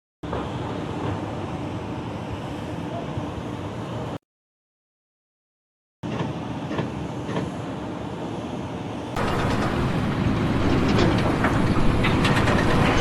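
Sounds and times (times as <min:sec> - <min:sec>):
machinery running: 0:09.2 - 0:13.0.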